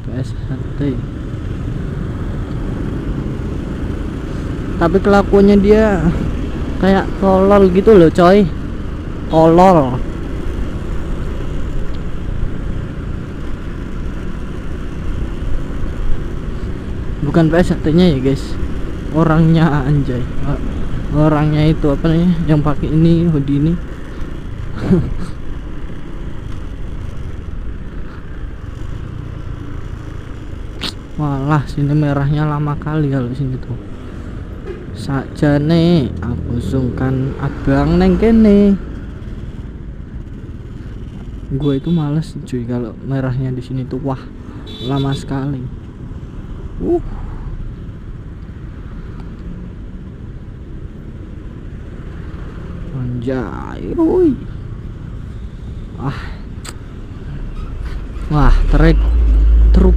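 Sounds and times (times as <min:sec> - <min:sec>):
vehicle engines: 0:00.0 - 0:59.9
motorcycle and traffic engines idling: 0:37.9 - 0:59.2.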